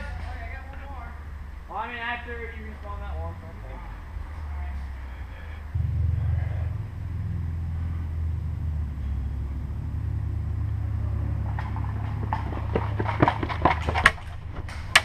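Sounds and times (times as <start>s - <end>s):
low rumble on microphone: 0.0s - 15.0s
sharp clicks and knocks: 11.4s - 15.0s.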